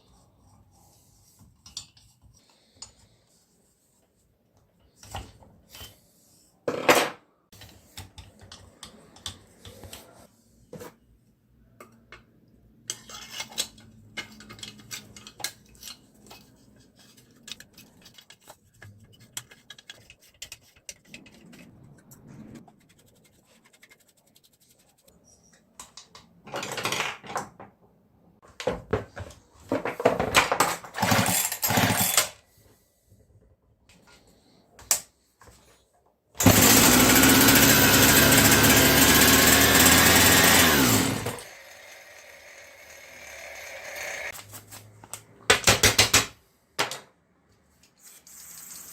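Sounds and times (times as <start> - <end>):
tools clicking and clattering: 12.8 - 21.7, 30.0 - 32.4
rough loud bursts: 36.4 - 41.4.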